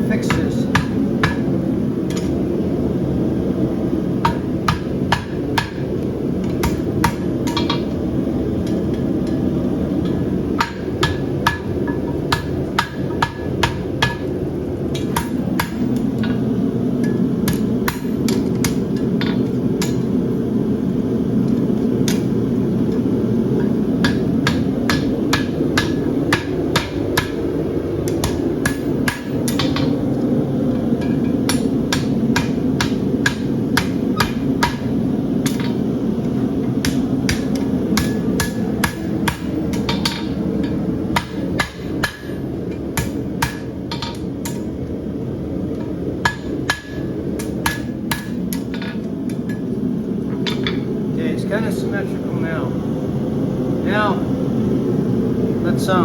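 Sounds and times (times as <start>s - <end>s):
steady low rumble: 0.0s - 56.0s
hammer striking horseshoe on anvil: 0.2s - 1.5s, 4.3s - 5.9s, 6.5s - 8.0s, 10.0s - 16.4s, 17.0s - 20.0s, 22.0s - 22.3s, 23.6s - 27.4s, 28.1s - 30.0s, 31.0s - 35.8s, 36.8s - 44.8s, 46.2s - 49.6s, 50.4s - 50.9s.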